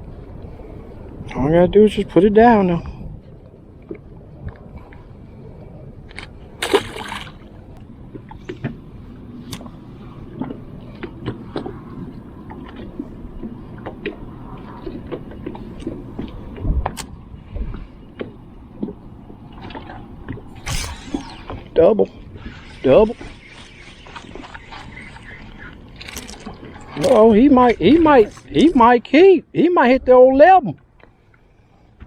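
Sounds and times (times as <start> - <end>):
water lapping against boat hull: 2.9 - 20.7, 21.4 - 28.7
sharp click: 20.6 - 21.7.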